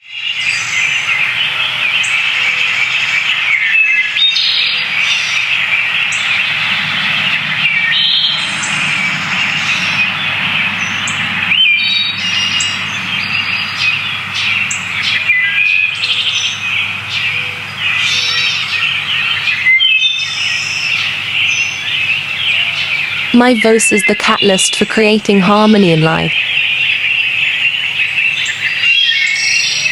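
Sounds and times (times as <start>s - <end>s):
birds chirping and singing: 2.8s - 24.9s.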